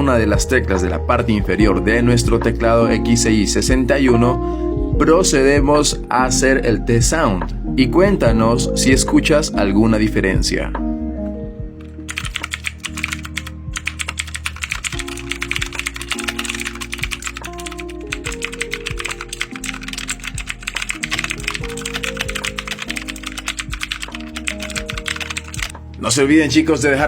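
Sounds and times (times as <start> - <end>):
typing on mechanical keyboard: 11.8 - 25.8.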